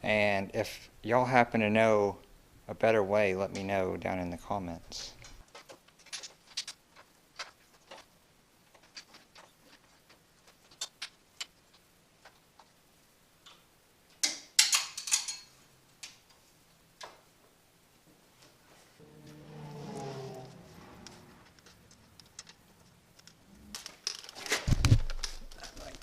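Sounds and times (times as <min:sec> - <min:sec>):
parts clattering: 0:05.2 - 0:08.1, 0:14.2 - 0:16.2, 0:19.1 - 0:26.0.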